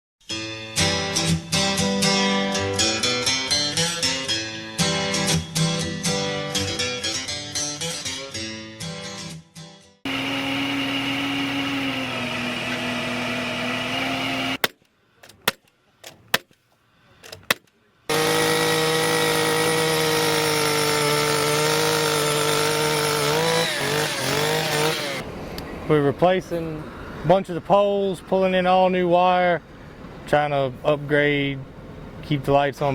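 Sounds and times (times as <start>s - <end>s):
acoustic guitar music: 0.3s - 9.9s
heavy equipment running: 10.1s - 14.6s.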